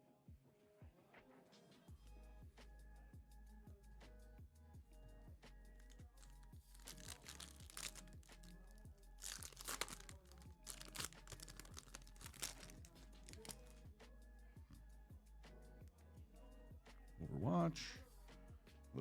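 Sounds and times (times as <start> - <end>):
background music with steady beat: 0.0 - 19.0
packaging crinkling: 6.2 - 8.6, 9.2 - 13.7.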